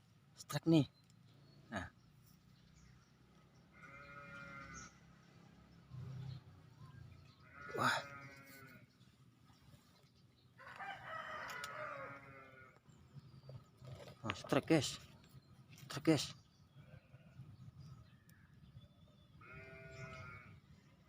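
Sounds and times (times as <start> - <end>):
faint rooster crowing: 10.6 - 12.5.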